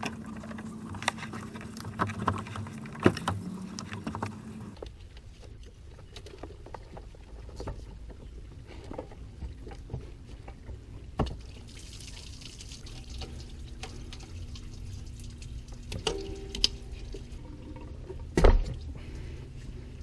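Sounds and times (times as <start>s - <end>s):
coolant trickling and splashing: 9.3s - 20.0s.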